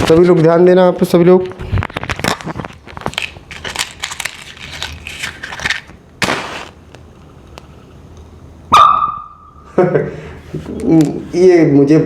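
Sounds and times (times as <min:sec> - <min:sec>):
match striking and flaring: 0:04.7 - 0:07.0.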